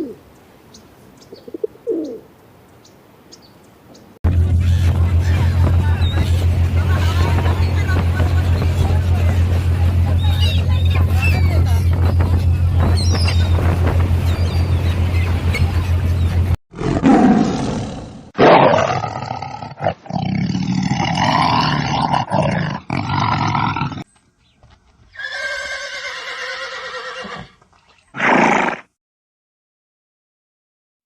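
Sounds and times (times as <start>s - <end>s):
steady noisy hum: 4.3s - 16.6s
roar-like animal calls: 16.7s - 24.0s.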